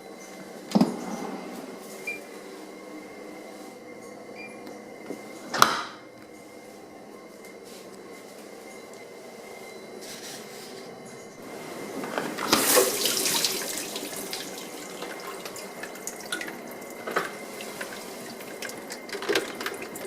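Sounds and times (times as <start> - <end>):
water running and splashing: 12.5 - 20.0.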